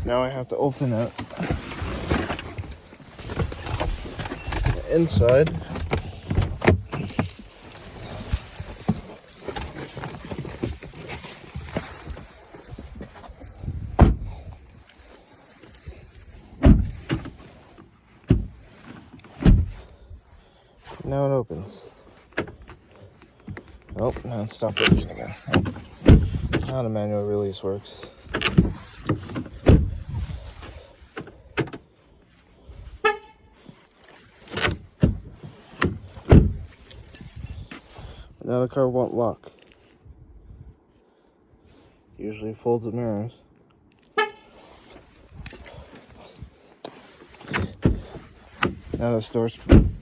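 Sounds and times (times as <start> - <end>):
car door and latch clunks: 1.0 - 12.2, 13.6 - 14.4, 16.6 - 17.4, 18.2 - 18.6, 19.2 - 19.8, 24.7 - 26.7, 28.4 - 30.2, 34.4 - 36.7, 46.9 - 49.0, 49.6 - 50.0
car horn toot: 33.0 - 33.5, 44.2 - 44.5.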